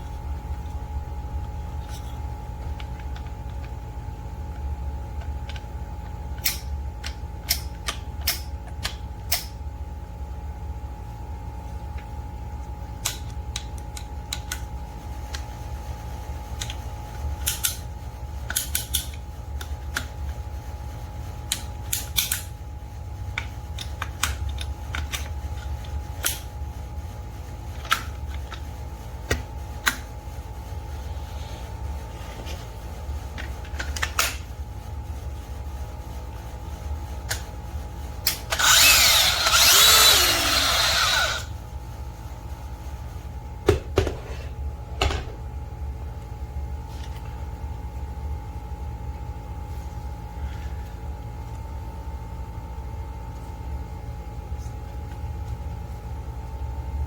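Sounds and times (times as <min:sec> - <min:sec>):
steady low hum: 0:00.0 - 0:57.0
power tool grinding: 0:38.5 - 0:41.5.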